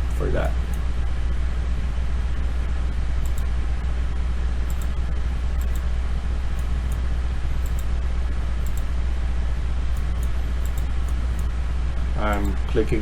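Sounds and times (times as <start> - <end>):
low hum and hiss: 0.0 - 13.0
computer mouse clicks: 0.5 - 0.8, 3.2 - 3.5, 4.7 - 5.0, 5.6 - 5.9, 6.6 - 7.0, 7.6 - 7.9, 8.6 - 9.0, 10.0 - 11.5, 12.3 - 12.6.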